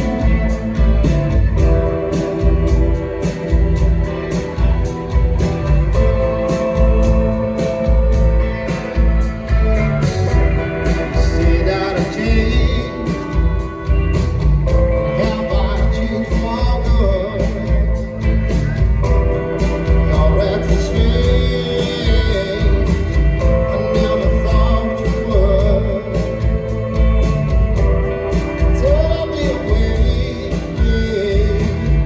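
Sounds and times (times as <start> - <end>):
bass: 0.0 - 32.0
drums with a steady beat: 0.0 - 32.0
guitar: 0.0 - 32.0
person singing: 6.0 - 18.6, 19.5 - 32.0.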